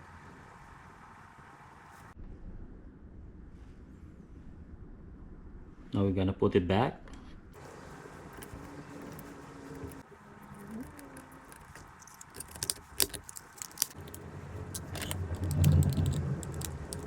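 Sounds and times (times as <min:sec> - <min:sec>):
dull low rumble: 0:02.1 - 0:05.9, 0:07.3 - 0:17.0
plastic switch parts clicking: 0:08.4 - 0:17.0.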